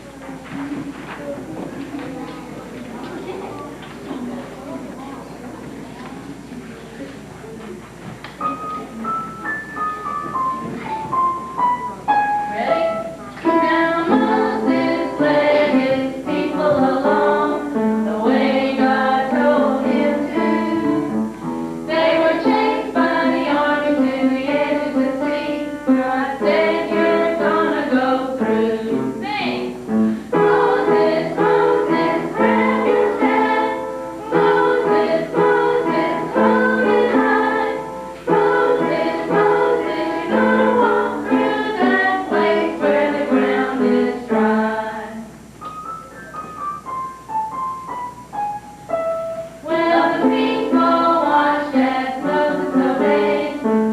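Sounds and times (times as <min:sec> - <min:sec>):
group singing with instruments: 0:13.4 - 0:29.2, 0:30.1 - 0:45.3, 0:49.6 - 0:53.9.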